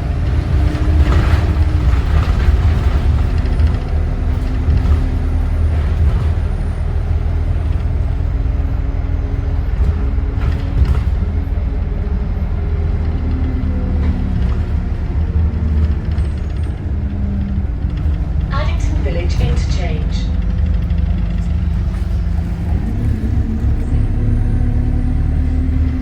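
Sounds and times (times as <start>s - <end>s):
bus engine rumbling: 0.0s - 26.0s.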